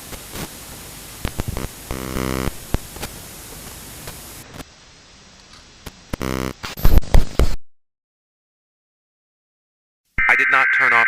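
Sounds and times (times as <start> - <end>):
static hiss: 0.0 - 7.6
crackling clicks: 1.2 - 4.7, 5.4 - 7.6.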